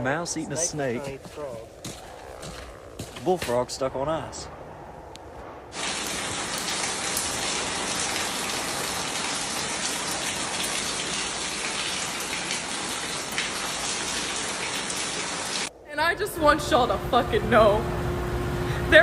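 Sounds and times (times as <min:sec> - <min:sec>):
water spraying from burst pipe: 0:05.7 - 0:15.7.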